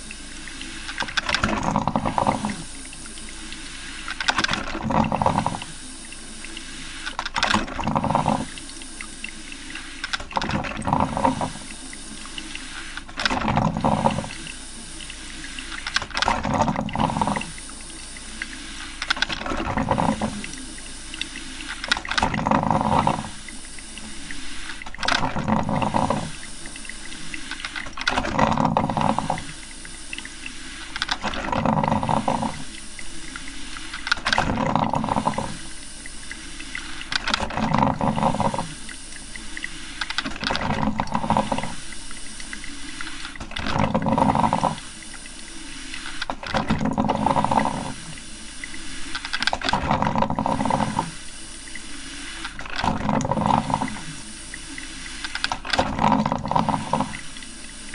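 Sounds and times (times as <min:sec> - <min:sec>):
steady hiss: 0:00.0 - 0:01.2, 0:02.1 - 0:04.3, 0:05.4 - 0:07.2, 0:08.3 - 0:10.2, 0:11.1 - 0:13.2, 0:14.2 - 0:16.1, 0:17.1 - 0:19.2, 0:20.0 - 0:22.1, 0:22.7 - 0:25.0, 0:25.8 - 0:28.0, 0:29.0 - 0:31.2, 0:32.0 - 0:34.2, 0:35.0 - 0:37.2, 0:38.0 - 0:40.3, 0:41.1 - 0:43.4, 0:47.2 - 0:49.4, 0:50.4 - 0:52.6, 0:53.4 - 0:55.6, 0:56.5 - 0:57.9
coffee maker gurgling and sputtering: 0:00.0 - 0:57.9.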